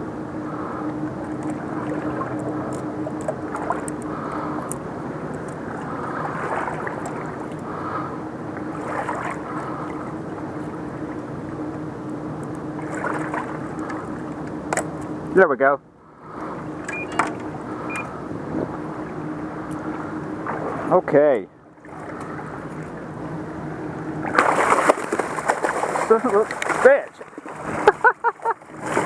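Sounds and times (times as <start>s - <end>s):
steady motor hum: 0.0s - 29.0s
water noise: 0.0s - 29.0s
light clicks and splashes: 0.8s - 7.7s, 8.5s - 15.1s, 21.8s - 23.0s, 24.2s - 29.0s.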